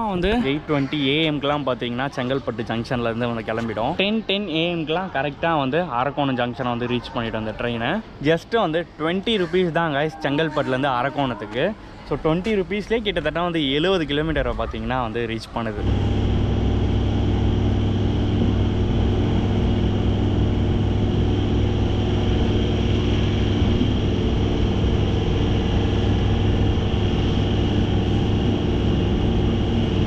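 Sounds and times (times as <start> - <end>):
electric train humming: 15.7 - 30.0.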